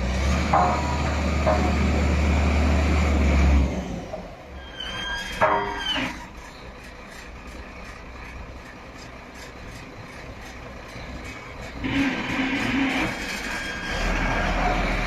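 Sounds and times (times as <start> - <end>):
diesel engine running: 0.0 - 4.6, 5.4 - 15.0
high squeal falling in pitch: 4.6 - 6.3, 13.3 - 14.7.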